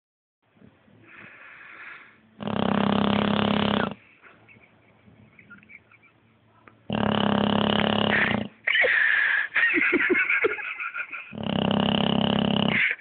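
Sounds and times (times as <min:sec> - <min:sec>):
dog snoring: 0:02.4 - 0:04.0, 0:06.9 - 0:08.6, 0:11.3 - 0:12.9.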